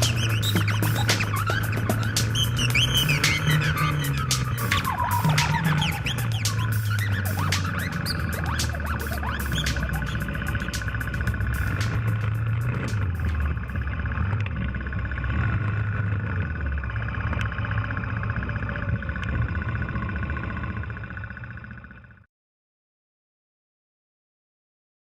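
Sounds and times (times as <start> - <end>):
sharp clicks and knocks: 0.0 - 14.6
atv engine running: 0.0 - 22.3.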